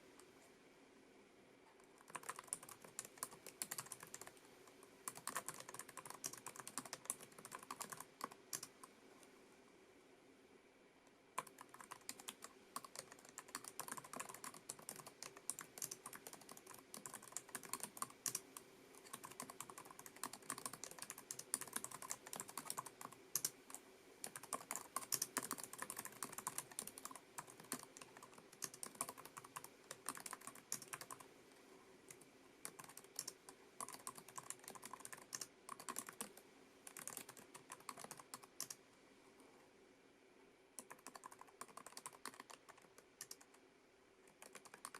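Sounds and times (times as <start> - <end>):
keyboard typing clatter: 2.0 - 4.4, 5.1 - 8.8, 11.4 - 23.6, 24.2 - 31.2, 32.6 - 38.8, 40.8 - 43.5, 44.3 - 44.9.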